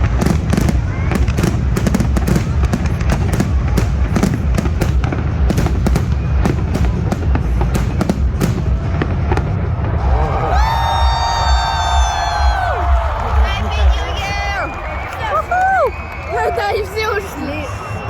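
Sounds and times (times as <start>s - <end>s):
fireworks crackling pops: 0.0s - 9.7s
low rumble of booms: 0.0s - 14.5s.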